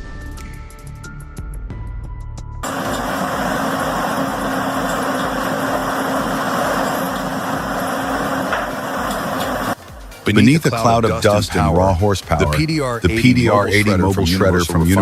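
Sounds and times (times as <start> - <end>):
music: 0.0 - 3.6, 7.5 - 15.0
heavy forestry machine running: 2.6 - 11.2.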